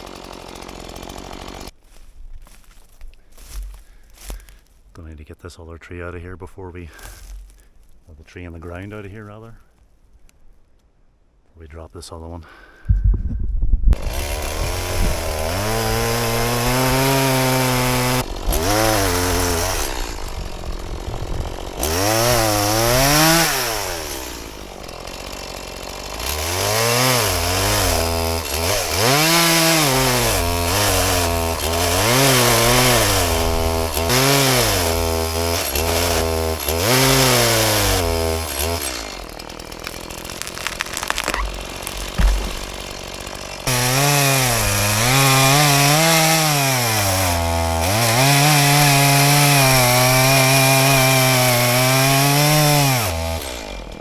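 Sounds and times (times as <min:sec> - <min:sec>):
chainsaw cutting wood: 0:00.0 - 0:01.8, 0:13.9 - 0:54.0.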